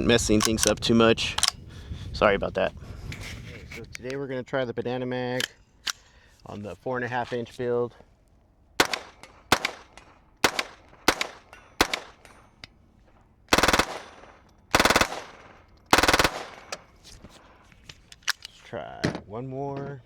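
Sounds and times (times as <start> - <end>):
rapid-fire rifle bursts: 8.8 - 12.7, 13.5 - 17.7
suppressed rifle shots: 8.8 - 12.7, 13.5 - 17.7.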